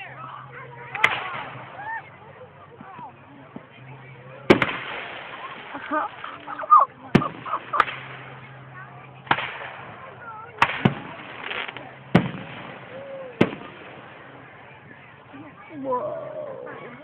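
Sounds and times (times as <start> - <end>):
fireworks bangs: 4.4 - 6.5, 7.1 - 15.0.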